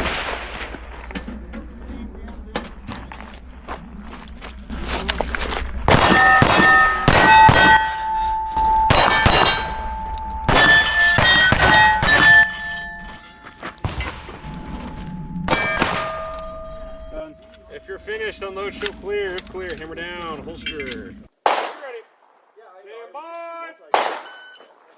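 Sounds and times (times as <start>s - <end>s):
pistol shots: 5.9s - 8.1s, 8.9s - 12.5s, 15.5s - 16.4s, 21.4s - 22.2s, 23.9s - 24.8s
steel plate ringing clang: 5.9s - 18.2s.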